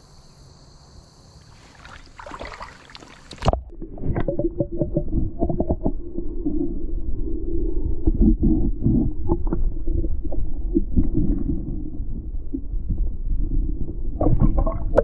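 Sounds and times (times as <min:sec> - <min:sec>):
creek water splashing: 0:01.4 - 0:03.7
muffled rumble: 0:01.6 - 0:15.0.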